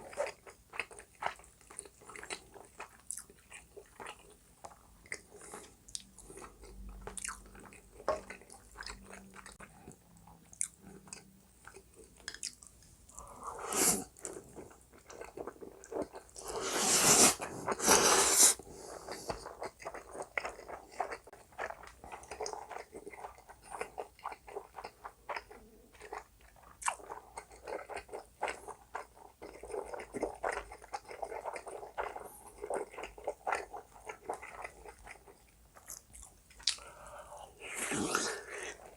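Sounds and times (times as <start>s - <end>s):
chewing and biting food: 0.0s - 12.8s, 19.1s - 36.9s.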